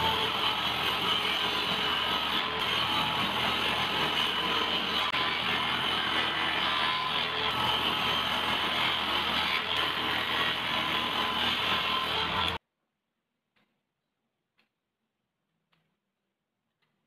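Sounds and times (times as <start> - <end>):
power tool whining: 0.0 - 12.6.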